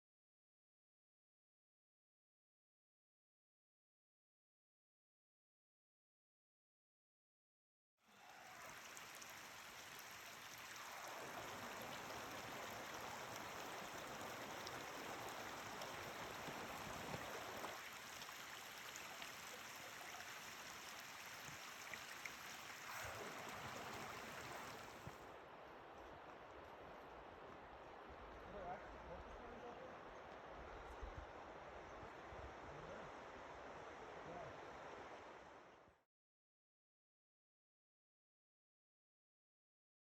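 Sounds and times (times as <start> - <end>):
mountain stream rushing: 8.1 - 35.7.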